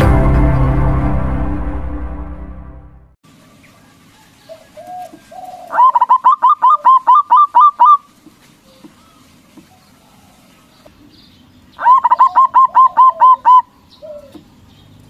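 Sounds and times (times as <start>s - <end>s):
dove cooing: 4.5s - 8.0s, 11.8s - 14.5s.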